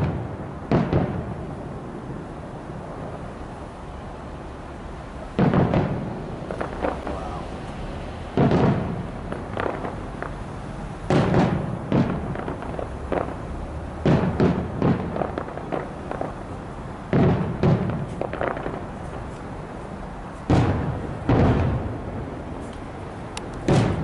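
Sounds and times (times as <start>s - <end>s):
small fireworks pops: 0.0s - 1.4s, 5.2s - 10.4s, 11.0s - 22.0s, 22.6s - 24.0s
fireworks booming: 0.0s - 24.0s.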